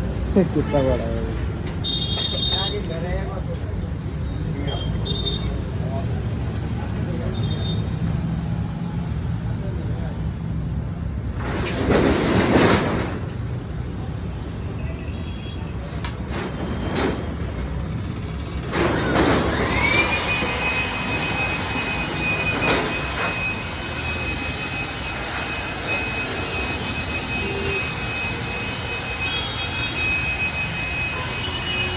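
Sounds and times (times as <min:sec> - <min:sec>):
electric air blower whine: 0:18.8 - 0:31.9.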